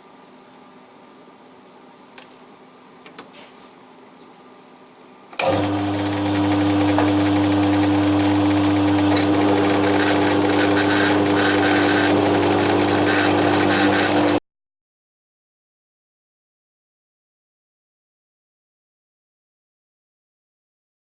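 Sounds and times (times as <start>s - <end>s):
milling machine cutting metal: 5.4s - 14.4s.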